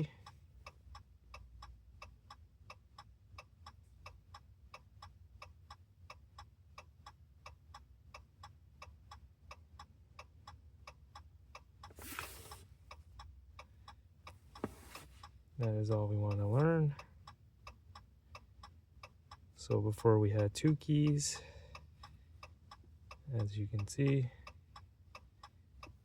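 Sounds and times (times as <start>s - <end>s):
brief rustle: 11.9s - 12.7s, 14.6s - 15.3s.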